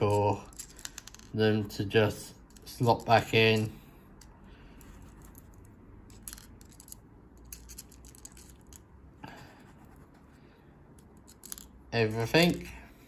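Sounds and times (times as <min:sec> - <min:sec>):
screwdriver bits clicking and rattling: 0:00.0 - 0:01.4, 0:02.4 - 0:08.9, 0:10.9 - 0:12.5.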